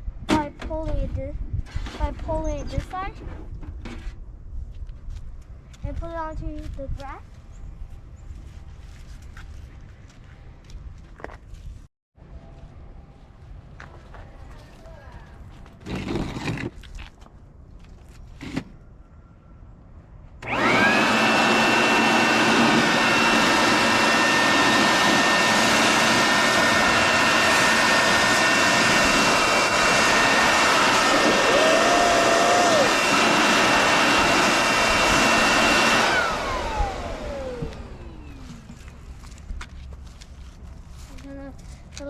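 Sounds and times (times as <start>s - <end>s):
electric leaf blower: 20.4s - 39.4s.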